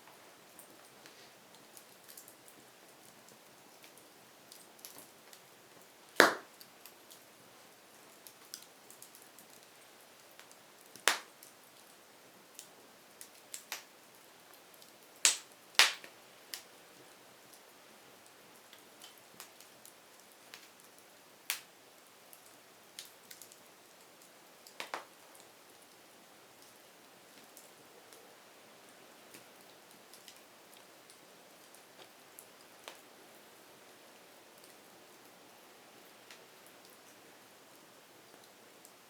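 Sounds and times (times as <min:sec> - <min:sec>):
faint steady hiss: 0:00.0 - 0:39.0
wood fire crackling: 0:00.0 - 0:39.0.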